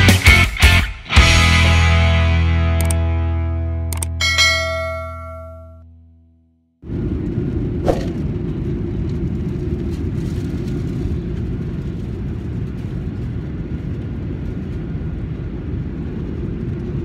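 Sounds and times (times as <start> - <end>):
airliner cabin rumble: 6.8 - 17.0.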